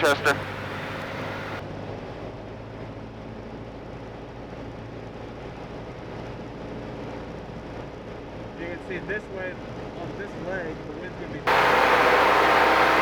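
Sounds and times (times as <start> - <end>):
radio hiss: 0.0 - 1.6
propeller aircraft engine droning: 0.0 - 8.6, 11.5 - 13.0.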